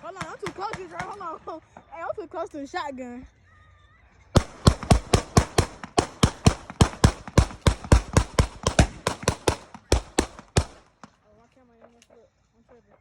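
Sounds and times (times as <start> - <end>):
rapid semi-automatic gunfire: 4.4 - 11.2.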